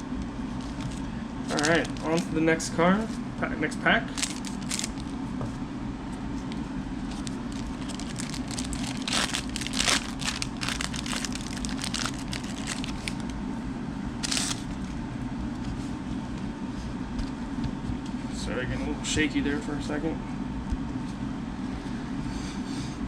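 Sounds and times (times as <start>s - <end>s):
wrapper crinkling and tearing: 0.6s - 2.3s, 4.1s - 5.1s, 7.1s - 13.3s, 14.2s - 14.9s.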